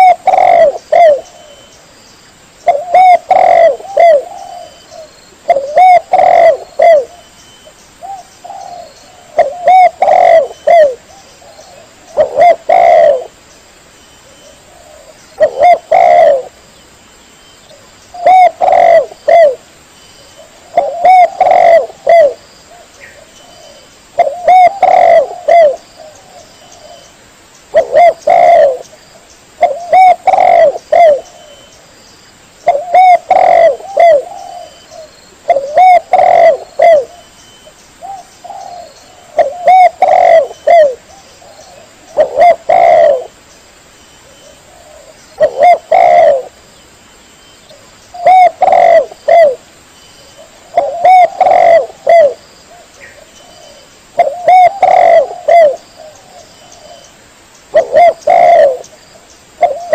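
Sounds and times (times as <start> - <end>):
dove cooing: 0.0 - 1.7, 2.6 - 7.3, 8.0 - 13.4, 14.2 - 16.6, 17.7 - 19.6, 20.4 - 27.1, 27.7 - 28.9, 29.6 - 31.7, 32.6 - 37.3, 38.0 - 43.4, 44.2 - 46.6, 47.7 - 49.7, 50.3 - 57.1, 57.7 - 59.0, 59.6 - 59.9.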